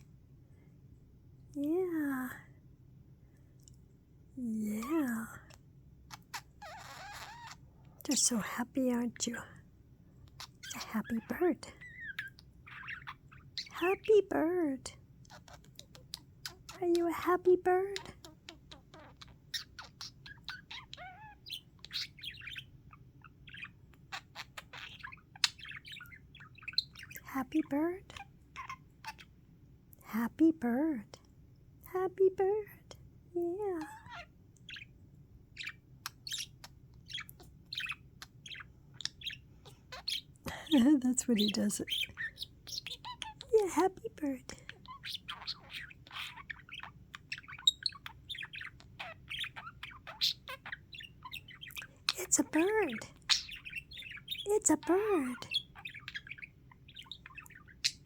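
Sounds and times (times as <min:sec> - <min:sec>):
budgerigar warbling chatter: 0:10.3 - 0:14.1, 0:15.3 - 0:27.3, 0:35.6 - 0:58.0.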